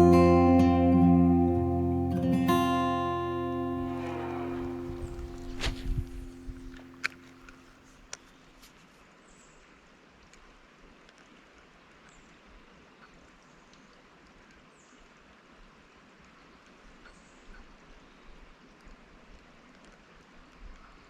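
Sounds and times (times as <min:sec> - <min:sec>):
acoustic guitar music: 0:00.0 - 0:07.6
creek water flowing: 0:01.4 - 0:07.6.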